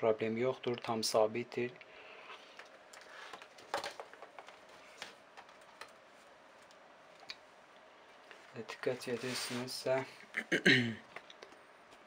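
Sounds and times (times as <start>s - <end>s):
low hiss: 6.0s - 12.0s.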